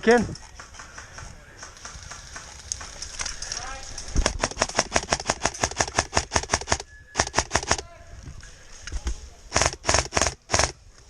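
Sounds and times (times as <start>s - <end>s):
airsoft gun firing rapidly: 4.2s - 7.8s, 9.5s - 10.8s.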